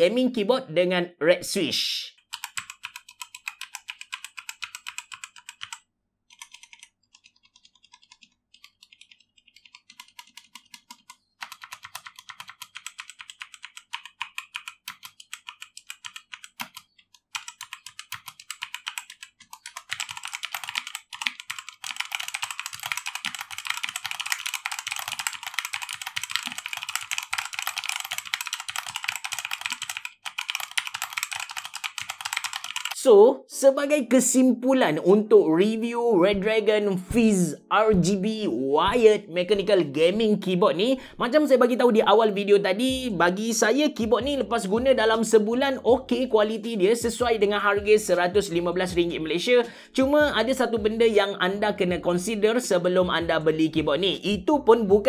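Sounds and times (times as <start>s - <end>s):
mechanical keyboard keystroke clacks: 2.3s - 33.0s.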